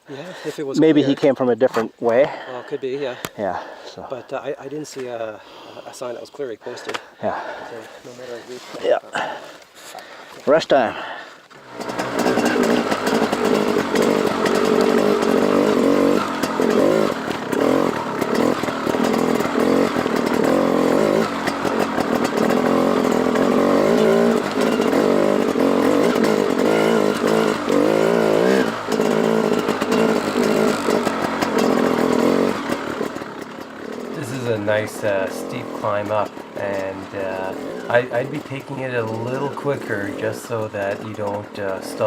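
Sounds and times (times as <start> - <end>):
dirt bike engine revving: 10.6 - 42.0.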